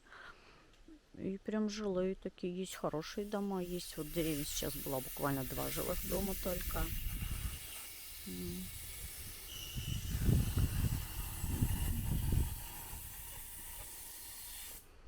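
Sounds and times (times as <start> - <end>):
air hissing out of tyre valve: 3.0 - 15.0.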